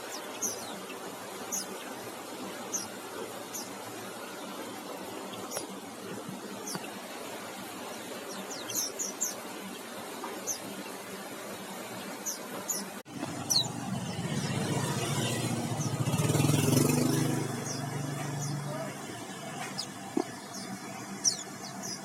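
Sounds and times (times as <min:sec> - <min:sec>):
small birds chirping: 0:00.0 - 0:22.0
vehicle engine: 0:13.1 - 0:22.0.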